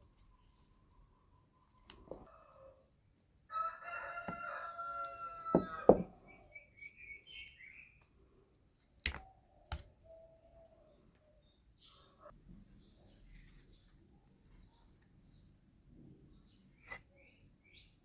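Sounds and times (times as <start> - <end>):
rooster crowing: 3.5 - 6.1
sharp knocks: 5.5 - 6.2.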